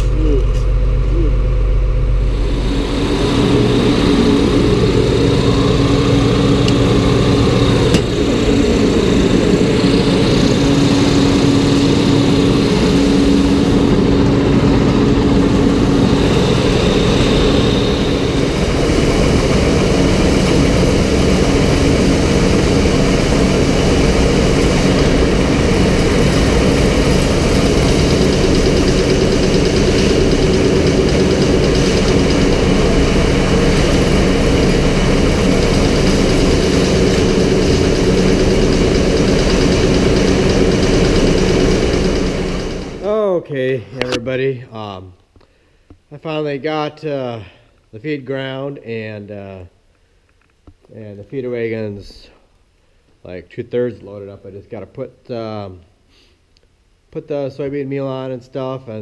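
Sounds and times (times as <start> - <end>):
tractor engine running: 0.0 - 43.2.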